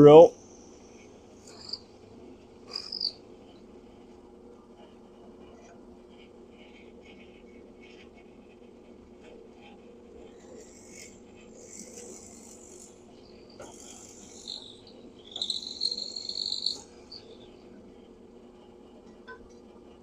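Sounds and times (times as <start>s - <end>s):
drill bit cutting whine: 13.5s - 17.4s.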